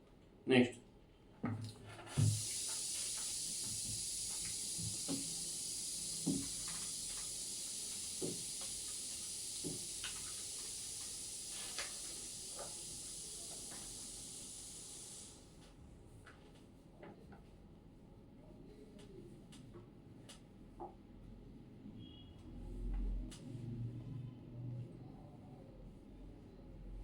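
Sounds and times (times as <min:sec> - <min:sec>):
high-pitched hiss: 0:02.2 - 0:15.6.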